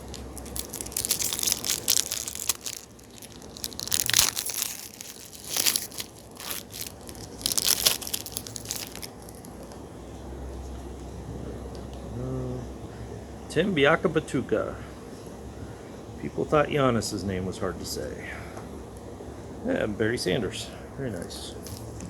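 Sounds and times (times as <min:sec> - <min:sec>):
wrapper crinkling and tearing: 0:00.0 - 0:09.8.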